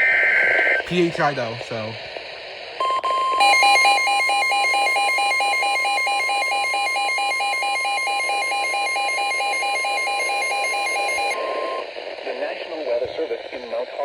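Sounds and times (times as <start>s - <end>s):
electronic alarm beeping rapidly: 2.8s - 11.8s.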